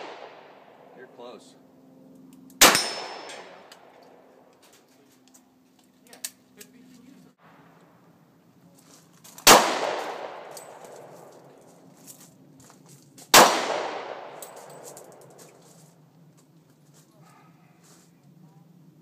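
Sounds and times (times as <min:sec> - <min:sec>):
handgun shots with echo: 0:02.6 - 0:03.9, 0:09.4 - 0:11.1, 0:13.3 - 0:15.1.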